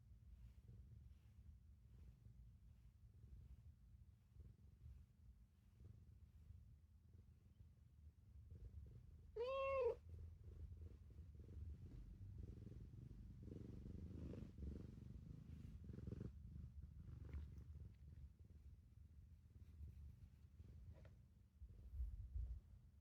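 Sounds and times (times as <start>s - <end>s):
cat purring: 0.0s - 23.0s
cat meowing: 9.4s - 10.0s.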